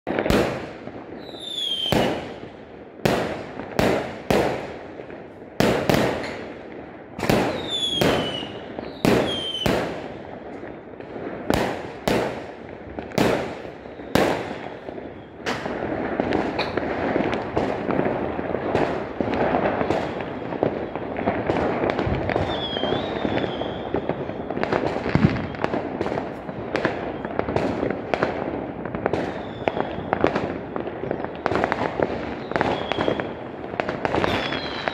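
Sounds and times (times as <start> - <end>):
fireworks crackle and rumble: 0.0 - 34.9
fireworks bursts: 0.1 - 34.9
falling whistle: 22.5 - 23.8, 34.3 - 34.9.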